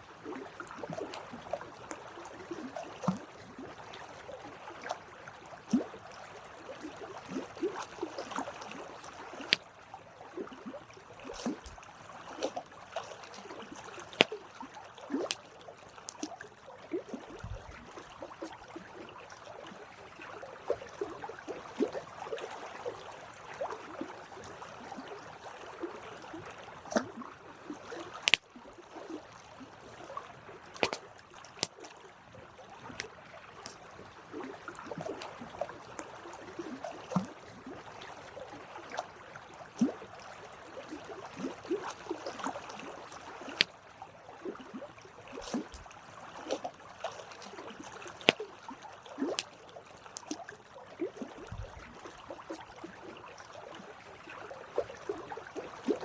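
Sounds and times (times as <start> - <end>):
wood crackling and popping: 28.2 - 28.4.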